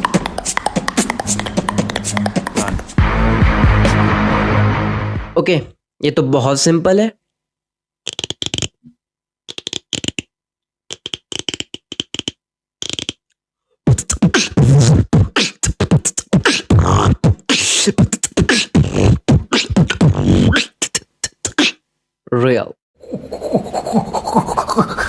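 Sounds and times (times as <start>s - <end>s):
person beatboxing: 0.0s - 3.0s, 8.1s - 8.8s, 9.5s - 10.3s, 10.9s - 13.2s, 13.9s - 21.8s, 23.0s - 25.0s.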